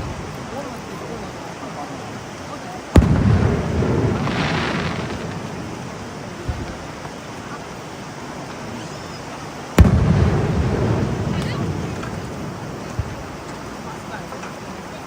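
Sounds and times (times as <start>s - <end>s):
fireworks shells bursting: 2.9s - 7.7s, 8.4s - 15.0s
faint crackle: 2.9s - 15.0s
loud boom: 3.0s - 6.8s, 9.8s - 13.4s.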